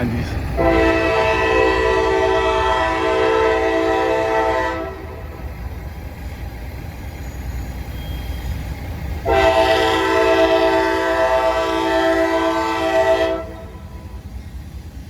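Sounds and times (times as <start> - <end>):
diesel locomotive rumble: 0.0 - 15.0
locomotive air horn: 0.6 - 5.4, 9.2 - 14.2.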